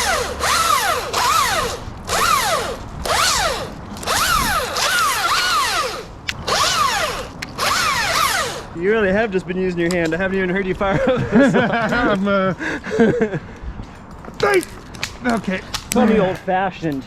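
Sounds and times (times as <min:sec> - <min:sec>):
hand saw cutting wood: 0:00.0 - 0:08.7.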